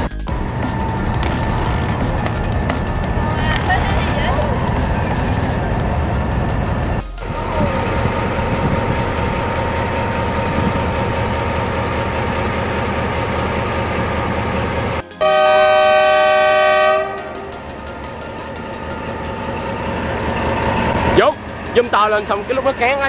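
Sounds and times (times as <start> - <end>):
diesel locomotive rumbling: 0.0 - 23.0
multi-tone train horn blast: 15.1 - 17.9.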